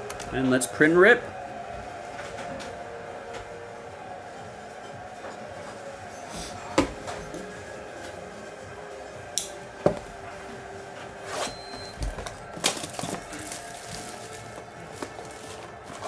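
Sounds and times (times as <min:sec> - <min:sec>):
faint background music: 0:00.0 - 0:16.0
handling clicks and knocks: 0:11.8 - 0:16.0.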